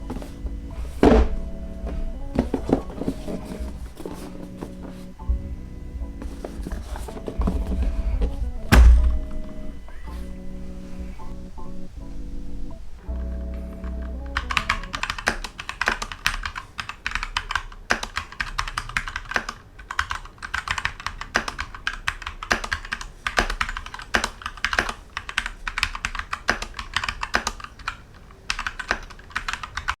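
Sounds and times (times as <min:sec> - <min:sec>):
music: 0:00.0 - 0:15.1
mechanical keyboard typing: 0:13.1 - 0:30.0.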